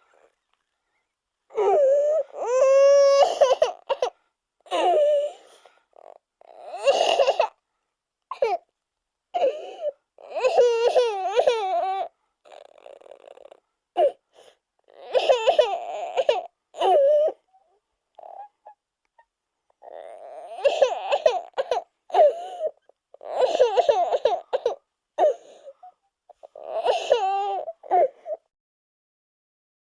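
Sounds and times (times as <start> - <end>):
baby crying wails: 1.5 - 4.1, 6.4 - 7.6, 9.4 - 13.2, 14.9 - 17.4, 19.8 - 25.6, 26.5 - 28.4.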